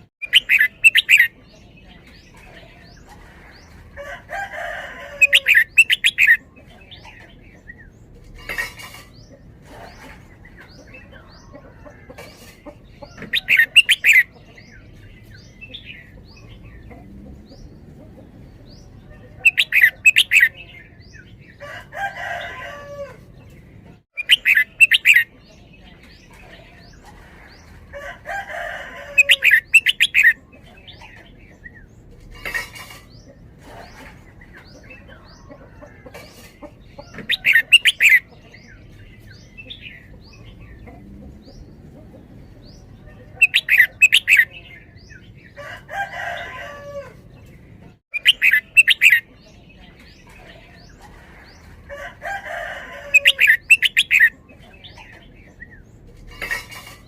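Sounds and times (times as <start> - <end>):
bulbul singing: 0.0 - 2.9, 5.2 - 7.9, 24.2 - 26.9, 29.2 - 31.8, 48.1 - 50.8, 53.0 - 55.8.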